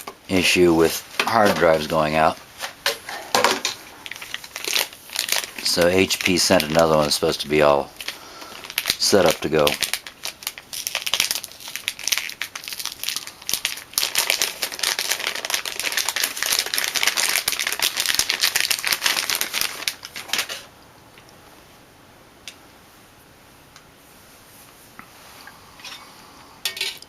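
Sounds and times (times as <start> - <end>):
plastic packaging crinkling: 3.4 - 20.7.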